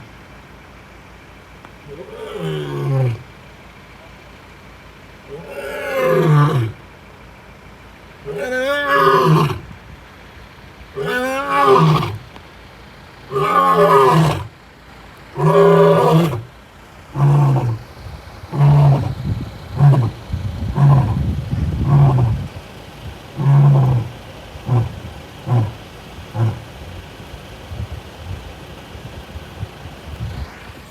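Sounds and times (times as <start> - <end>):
lion roaring: 1.9 - 3.3, 5.3 - 6.8, 8.3 - 9.7, 11.0 - 12.2, 13.3 - 14.5, 15.3 - 16.5, 17.1 - 17.8, 18.5 - 19.2, 19.8 - 22.5, 23.3 - 26.8.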